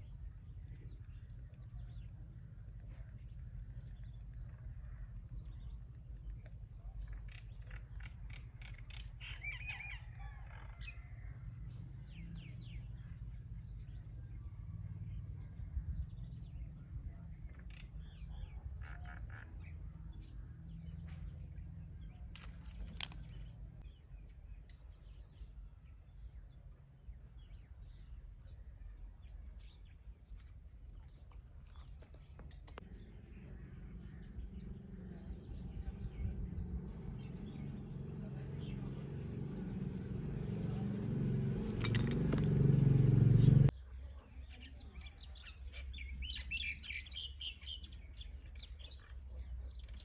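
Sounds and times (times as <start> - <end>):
small birds chirping: 0.0 - 50.0
steady low rumble: 32.4 - 43.7.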